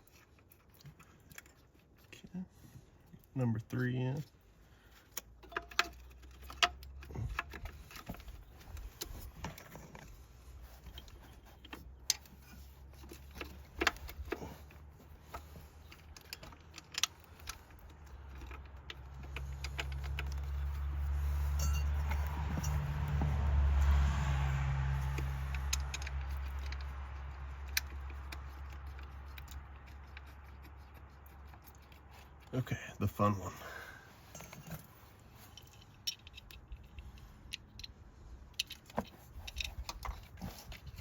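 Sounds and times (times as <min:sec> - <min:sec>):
metal tools clicking and clinking: 0:12.0 - 0:23.2, 0:34.3 - 0:41.0.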